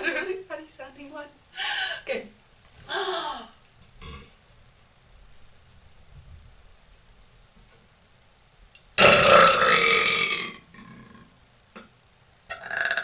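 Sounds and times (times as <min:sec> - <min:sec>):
woman burping: 0:12.5 - 0:13.0.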